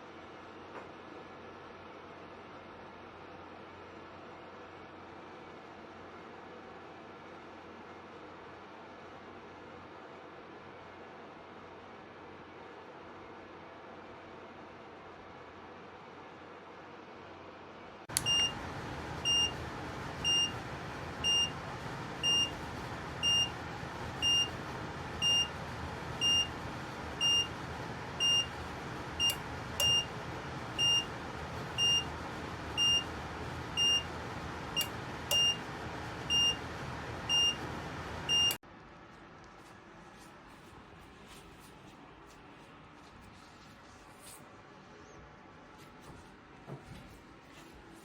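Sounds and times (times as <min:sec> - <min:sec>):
fan heater running: 0:15.2 - 0:48.0.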